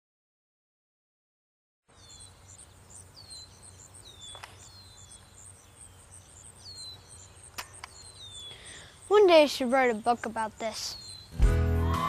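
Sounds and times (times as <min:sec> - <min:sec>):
rapid high chirps: 0:02.2 - 0:12.0
sharp click: 0:07.5 - 0:08.0.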